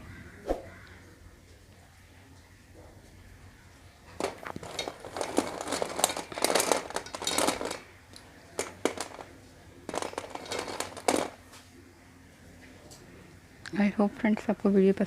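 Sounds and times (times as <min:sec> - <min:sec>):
packaging crinkling: 0:04.2 - 0:07.9, 0:08.6 - 0:09.3, 0:09.9 - 0:11.4.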